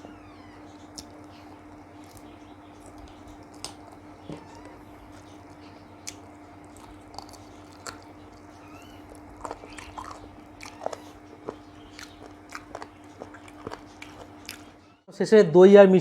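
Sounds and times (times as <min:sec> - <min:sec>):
faint steady hum: 0:00.0 - 0:16.0
chewing: 0:00.8 - 0:14.8.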